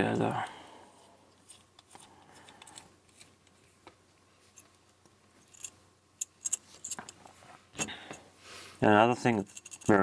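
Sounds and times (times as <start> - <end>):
light metallic clicks and rattles: 9.4 - 10.0.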